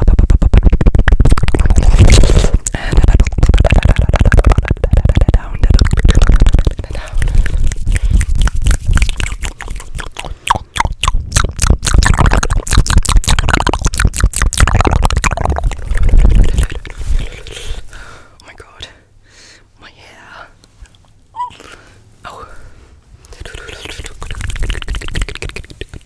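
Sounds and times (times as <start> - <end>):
wet mouth clicks and smacks: 0.0 - 17.8, 23.2 - 26.0.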